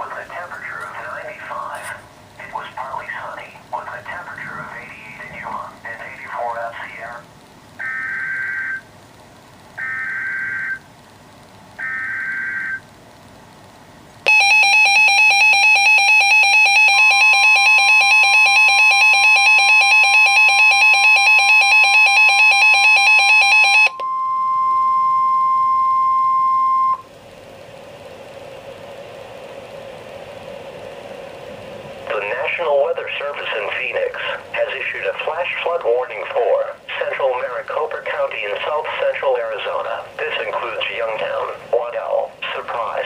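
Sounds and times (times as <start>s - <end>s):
faint radio hiss: 0.0s - 7.8s, 26.6s - 43.0s
data tone bursts: 7.8s - 8.9s, 9.8s - 10.8s, 11.8s - 12.9s, 17.2s - 27.1s
pulsing phone alert tone: 7.8s - 8.9s, 9.8s - 10.8s, 11.8s - 12.8s, 14.3s - 27.1s
steady radio alarm tone: 7.8s - 8.9s, 9.8s - 10.9s, 11.8s - 12.9s, 14.3s - 27.1s.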